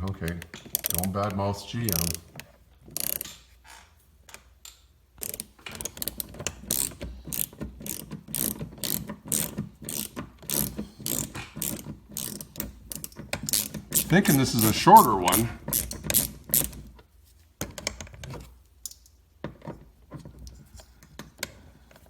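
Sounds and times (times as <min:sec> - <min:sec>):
ratchet wrench clicking: 0:00.6 - 0:01.1, 0:01.9 - 0:02.2, 0:03.0 - 0:03.4, 0:05.2 - 0:14.7, 0:15.3 - 0:16.8.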